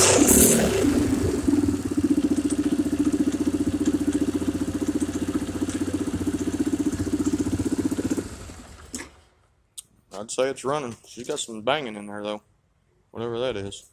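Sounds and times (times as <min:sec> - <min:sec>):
banging in engine: 0:00.0 - 0:09.2
atv engine idling: 0:00.0 - 0:09.3.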